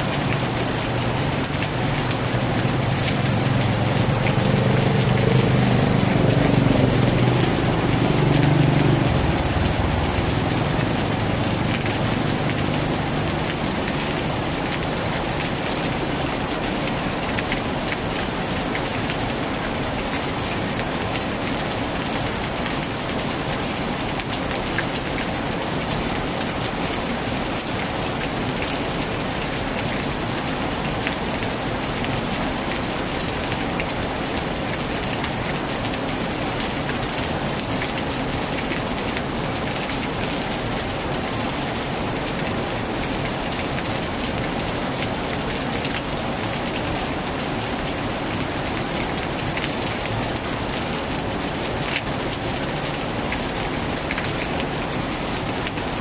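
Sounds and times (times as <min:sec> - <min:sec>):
raindrops ticking: 0:00.0 - 0:50.7
heavy rain hissing: 0:00.0 - 0:56.0.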